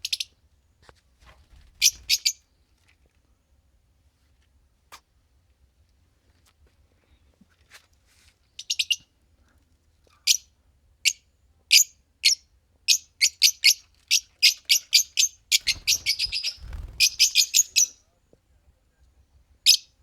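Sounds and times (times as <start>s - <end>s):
lovebirds chirping: 13.4s - 18.0s.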